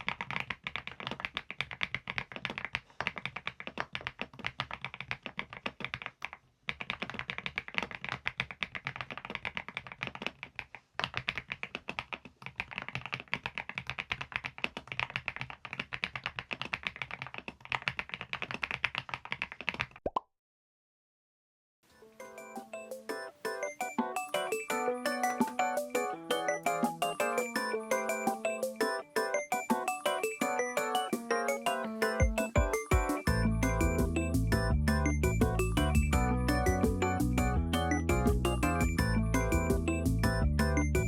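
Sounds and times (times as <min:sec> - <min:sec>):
mechanical keyboard typing: 0:00.0 - 0:19.9.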